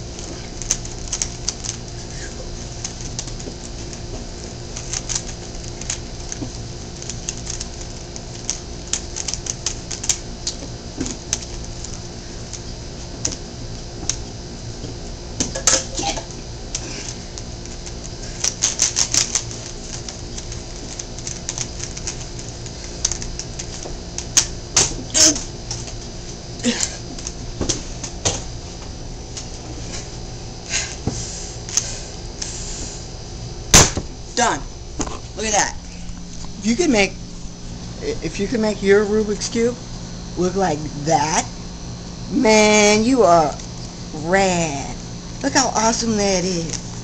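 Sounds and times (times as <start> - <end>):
steady low hum: 0.0 - 47.0.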